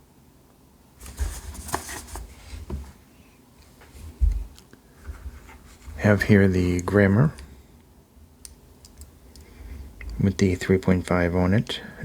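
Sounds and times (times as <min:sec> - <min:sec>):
cables rustling and clicking: 0:08.4 - 0:10.2.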